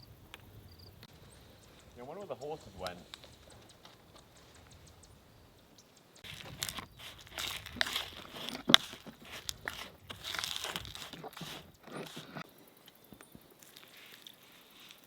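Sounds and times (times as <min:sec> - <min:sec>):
crinkly material rustling: 0:06.2 - 0:12.4, 0:13.6 - 0:15.0.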